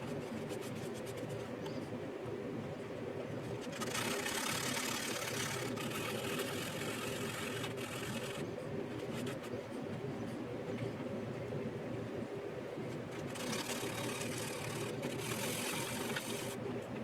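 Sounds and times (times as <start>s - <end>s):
sandpaper rubbing plastic: 0.0s - 1.4s, 3.6s - 8.4s, 13.1s - 16.6s
steady low hum: 0.0s - 17.0s.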